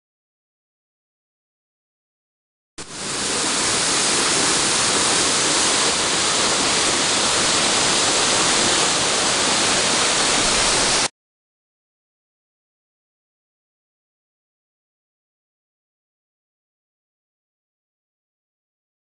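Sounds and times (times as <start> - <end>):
loud rushing hiss: 2.8 - 11.1.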